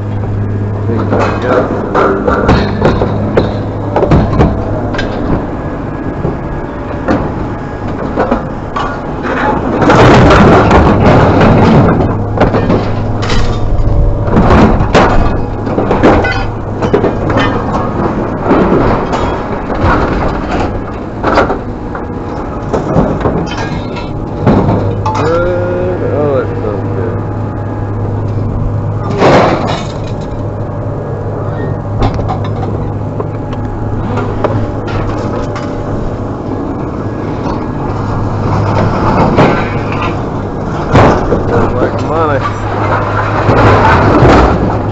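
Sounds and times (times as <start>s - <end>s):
low engine hum: 0.0s - 44.9s
scrap metal clanking: 8.1s - 20.8s.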